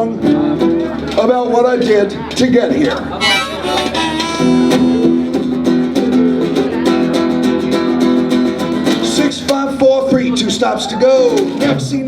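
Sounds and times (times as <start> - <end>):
held chord tones: 3.2 - 5.3
guitar strummed: 3.2 - 5.4.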